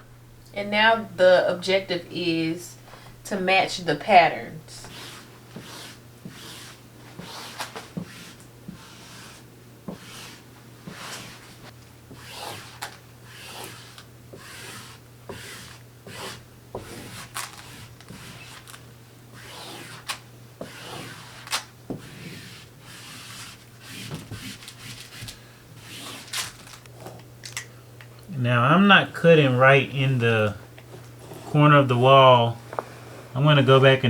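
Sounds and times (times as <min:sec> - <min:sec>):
faint low hum: 0:00.0 - 0:34.0
wallpaper rustling and rubbing: 0:04.8 - 0:27.2
wallpaper crinkles: 0:10.0 - 0:13.0, 0:14.8 - 0:18.8, 0:19.4 - 0:27.6.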